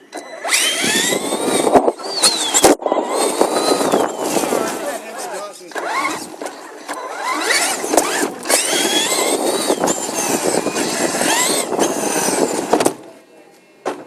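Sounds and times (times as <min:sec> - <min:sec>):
electric motor and gears whining: 0:00.0 - 0:13.1.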